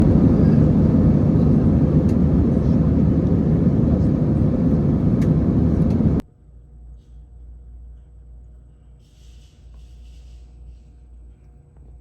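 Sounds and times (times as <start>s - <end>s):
jet airliner roar: 0.0s - 6.2s.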